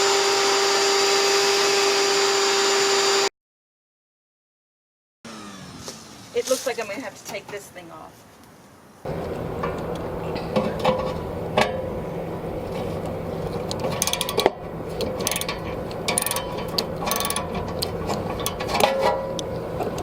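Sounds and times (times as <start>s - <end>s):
motor hum: 5.3s - 6.4s
ratcheting hand tool clicks: 13.7s - 20.0s.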